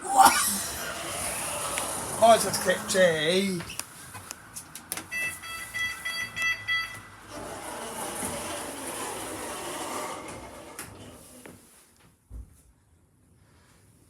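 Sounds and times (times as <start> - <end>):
lift beeper high beeps: 5.1 - 7.0.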